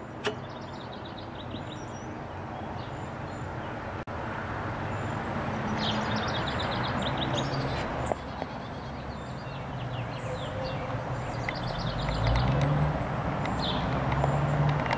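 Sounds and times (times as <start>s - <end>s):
small birds chirping: 0.0s - 4.0s, 4.8s - 14.7s
sharp click: 0.2s - 0.5s.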